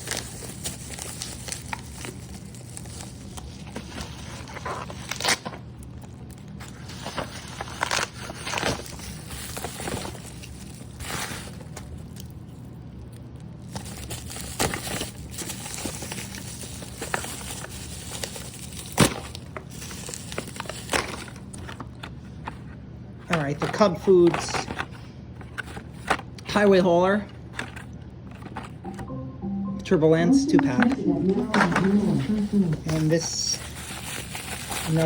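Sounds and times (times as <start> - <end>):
packaging crinkling and rustling: 0.0 - 26.8, 27.4 - 28.8, 31.5 - 35.0
steady low hum: 28.0 - 34.7.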